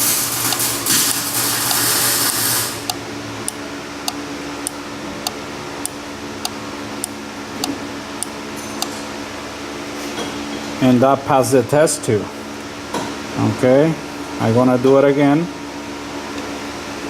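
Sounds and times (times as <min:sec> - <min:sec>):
loud hiss: 0:00.0 - 0:02.9
relay clicking on and off: 0:00.0 - 0:03.0
steady hum: 0:00.0 - 0:10.0.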